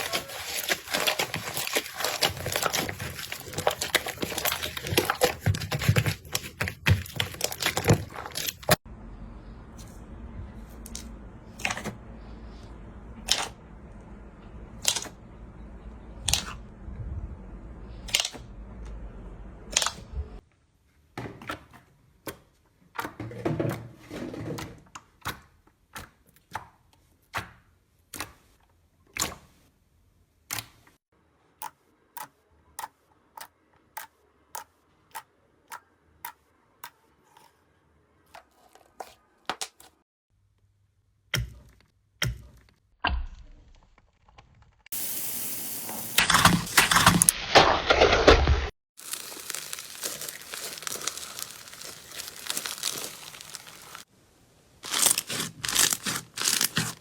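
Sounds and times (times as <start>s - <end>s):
low hum: 8.9s - 20.4s.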